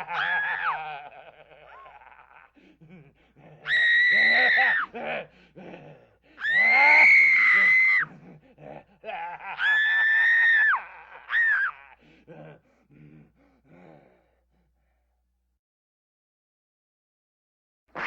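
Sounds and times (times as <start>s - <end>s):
person screaming: 0.0s - 2.1s, 3.6s - 5.3s, 6.4s - 8.1s
broken vocal sounds: 0.0s - 6.6s, 8.0s - 9.6s, 10.8s - 14.8s.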